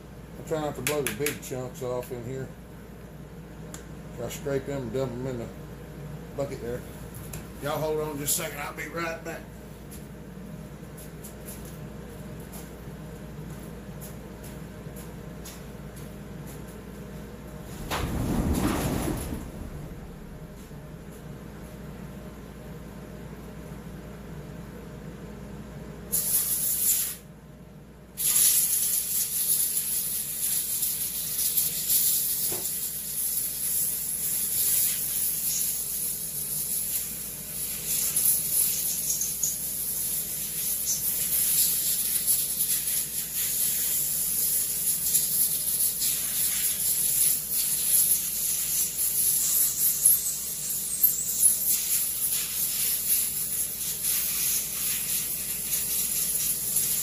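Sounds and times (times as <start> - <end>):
compressed air hissing: 26.1 - 27.2, 28.2 - 57.0.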